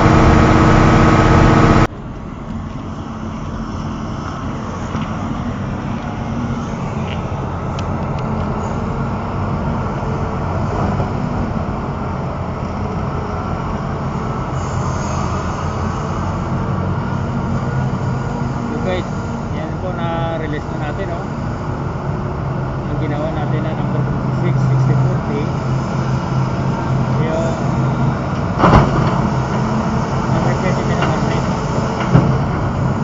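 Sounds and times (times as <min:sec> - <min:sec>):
diesel engine rumbling: 0:00.0 - 0:33.0.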